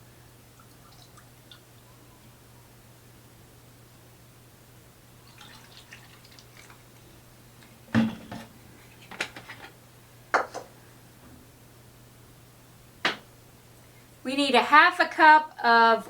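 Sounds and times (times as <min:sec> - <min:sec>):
faint liquid splashes: 0:05.2 - 0:07.8.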